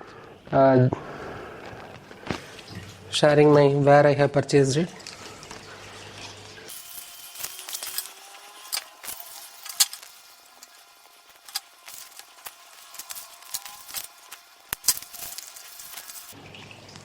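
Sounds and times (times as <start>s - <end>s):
plastic parts clicking and tapping: 7.0s - 16.4s.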